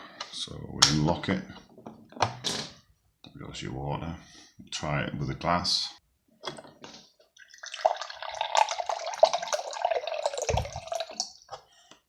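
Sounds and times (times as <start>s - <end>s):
water pouring into glass: 7.4s - 11.4s.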